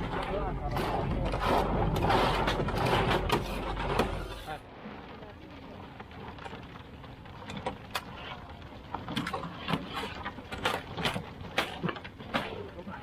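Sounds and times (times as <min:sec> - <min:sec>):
sharp knocks and clatter: 0:09.0 - 0:13.0.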